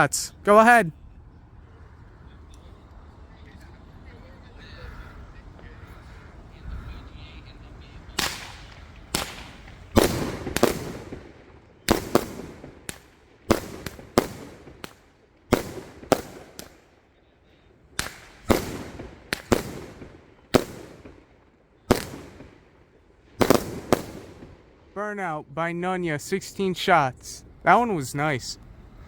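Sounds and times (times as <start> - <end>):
firework bangs echoing: 8.2 - 16.9, 18.0 - 25.0.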